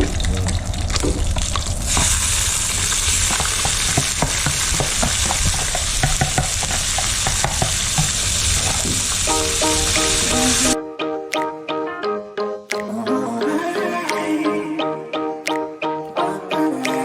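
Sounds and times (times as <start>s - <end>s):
food sizzling in hot oil: 0.0s - 10.8s.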